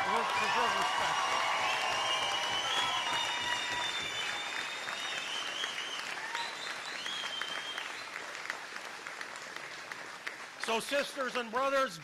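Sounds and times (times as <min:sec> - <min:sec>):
crowd applauding: 0:00.0 - 0:11.9.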